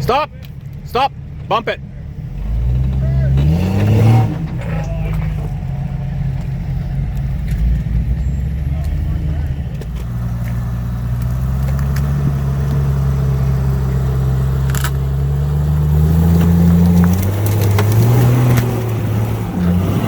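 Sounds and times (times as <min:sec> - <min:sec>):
off-road vehicle engine straining: 0:00.0 - 0:20.0
sharp crack: 0:14.5 - 0:15.2, 0:15.8 - 0:19.6
clicks and crunches on rocks: 0:16.4 - 0:18.8.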